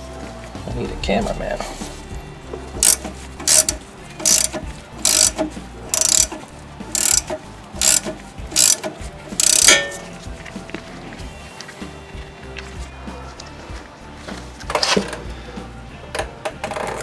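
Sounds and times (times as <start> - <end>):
ratcheting wrench clicking: 2.8 - 10.0.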